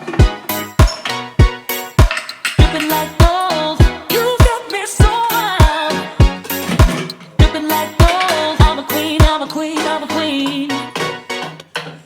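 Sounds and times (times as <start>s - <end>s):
vibrato melody over a beat: 0.0s - 11.8s
deep kick drum: 2.6s - 7.6s.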